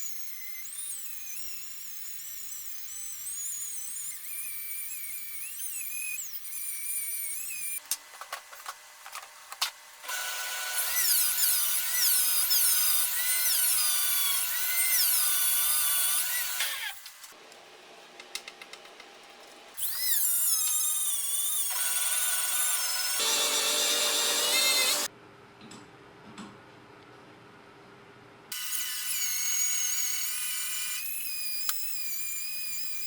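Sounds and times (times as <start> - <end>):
power tool screeching on metal: 0.0 - 7.8, 19.8 - 25.1, 28.6 - 33.0.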